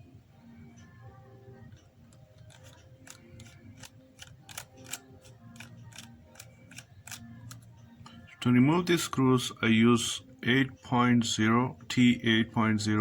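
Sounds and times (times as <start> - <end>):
faint background music: 0.0 - 13.0
precision screwdriver clicks: 2.4 - 7.6.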